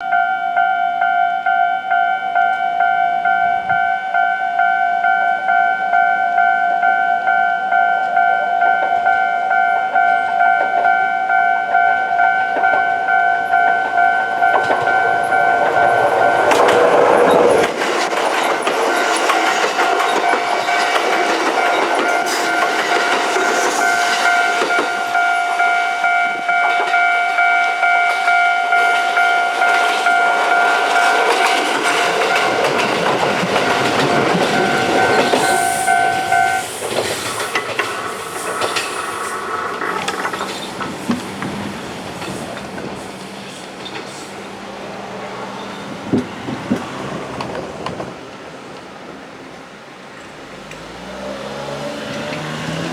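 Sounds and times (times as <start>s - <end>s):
level-crossing warning bell: 0.0s - 48.1s
trains rushing past: 0.0s - 52.9s
train wheels clattering: 8.0s - 48.9s.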